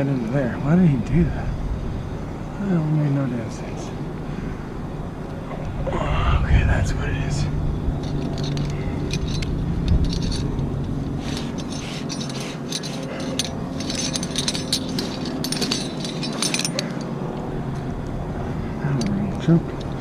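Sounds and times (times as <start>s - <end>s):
light metallic clicks and rattles: 8.0s - 17.2s, 18.9s - 20.0s.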